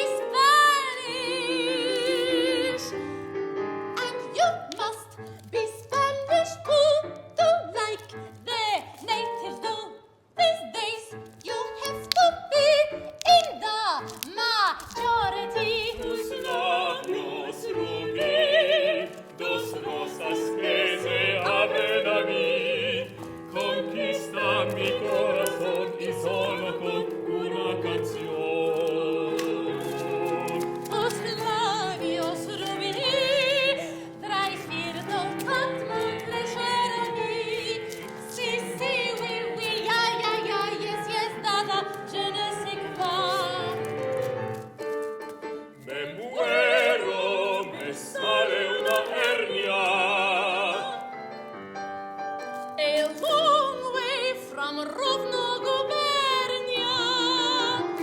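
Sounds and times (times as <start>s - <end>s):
woman singing operatically: 0.0s - 3.0s, 4.0s - 43.9s, 52.8s - 58.0s
piano accompaniment: 0.0s - 58.0s.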